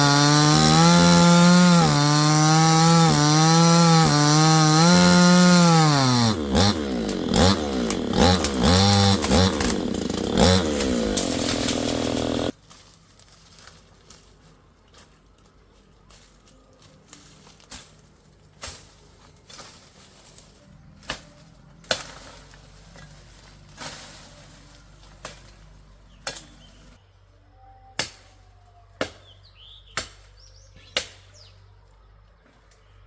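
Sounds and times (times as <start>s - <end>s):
bird chirping: 29.2s - 33.0s.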